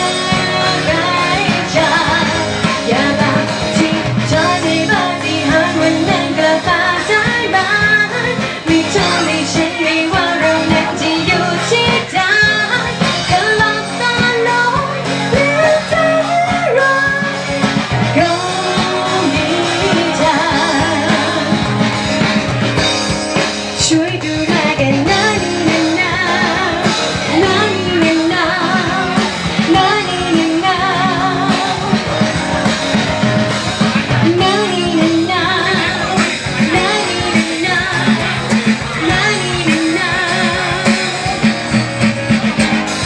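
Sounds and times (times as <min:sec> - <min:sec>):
drum kit: 0:00.0 - 0:43.0
guitar: 0:00.0 - 0:43.0
pop-rock song with singing: 0:00.0 - 0:43.0.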